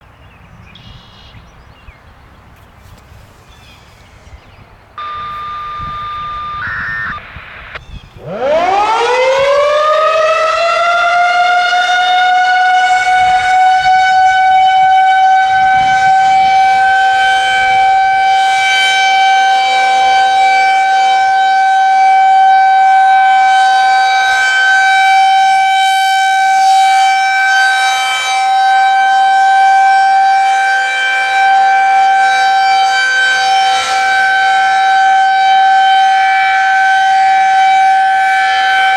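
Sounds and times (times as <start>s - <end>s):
stuttering beep: 5.0s - 7.8s
steady electronic tone: 5.0s - 9.2s
warning siren wailing: 5.0s - 38.9s.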